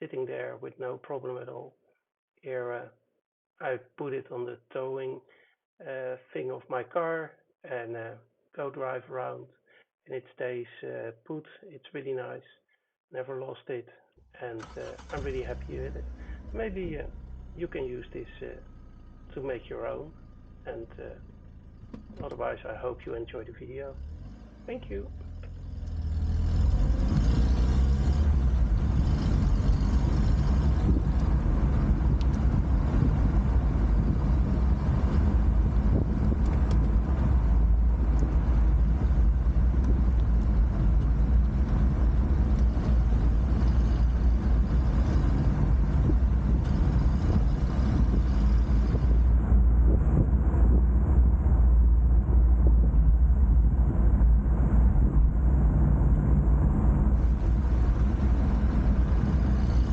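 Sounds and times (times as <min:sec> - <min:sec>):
road and wind rumble: 0:14.6 - 0:59.9.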